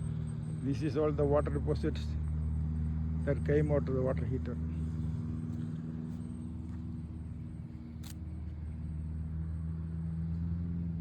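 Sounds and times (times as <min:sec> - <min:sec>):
low mechanical hum: 0:04.2 - 0:11.0.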